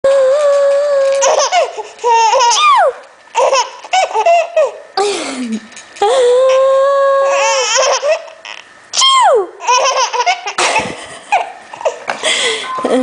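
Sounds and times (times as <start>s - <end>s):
baby laughing: 1.1s - 4.8s, 7.3s - 8.6s, 9.6s - 12.0s.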